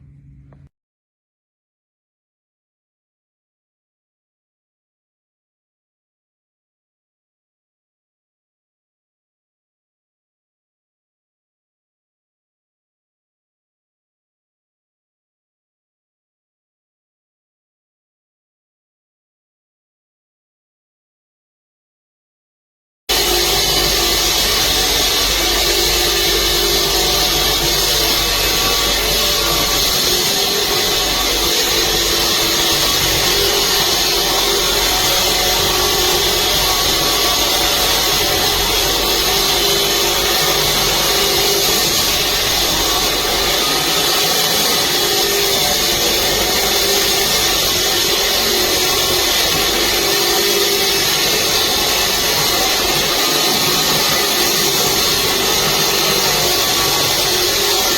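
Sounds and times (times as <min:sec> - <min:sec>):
electric concrete saw running: 0:23.1 - 0:57.9.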